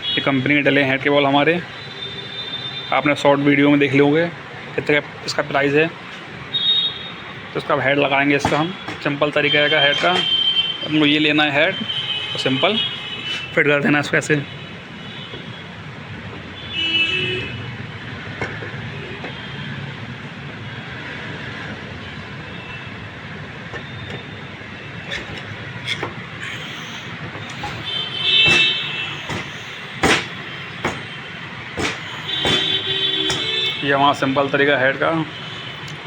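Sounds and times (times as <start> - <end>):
traffic noise: 0.0 - 36.0
horn toots: 25.0 - 34.6.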